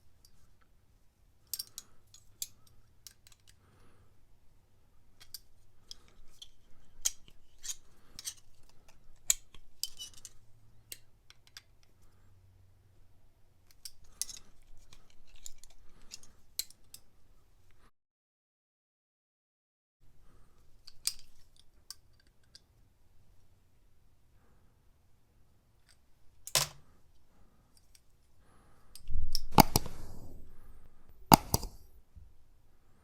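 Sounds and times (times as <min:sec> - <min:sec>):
pliers clicking and snapping: 0:01.5 - 0:03.6, 0:29.0 - 0:30.3, 0:31.3 - 0:31.8.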